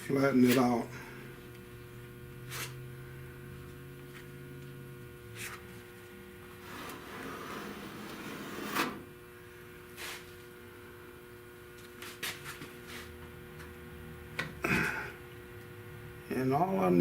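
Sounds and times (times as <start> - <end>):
steady hum: 0.0 - 17.0
rasping scrape: 6.6 - 9.1.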